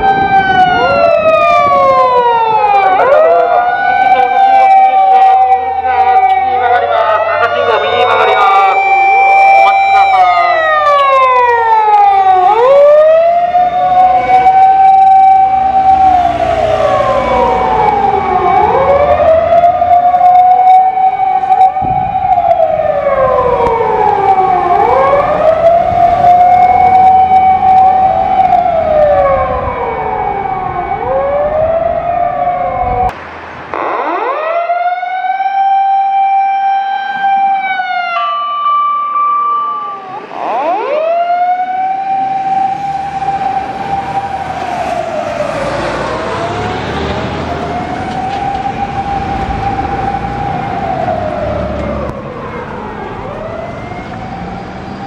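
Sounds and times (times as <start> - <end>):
wind-up siren: 0.0 - 33.1, 33.7 - 55.0
siren sweeping downward: 0.0 - 55.0
truck and traffic rumble: 0.0 - 55.0.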